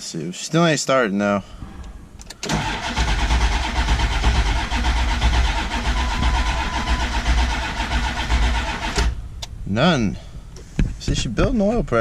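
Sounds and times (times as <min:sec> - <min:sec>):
diesel engine cranking on starter: 0:02.2 - 0:09.2.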